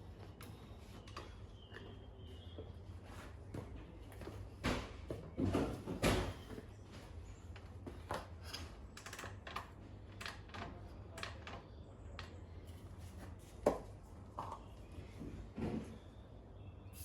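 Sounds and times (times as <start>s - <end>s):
tools clicking and knocking: 8.2s - 11.5s.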